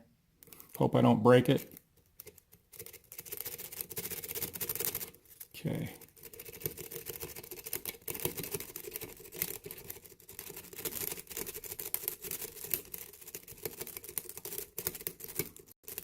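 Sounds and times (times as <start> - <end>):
lock pick scratching and clicking: 1.6 - 5.4.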